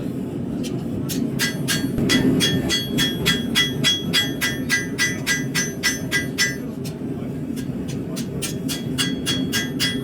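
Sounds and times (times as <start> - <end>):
hammer striking steel on anvil: 1.4 - 7.0, 7.6 - 10.0.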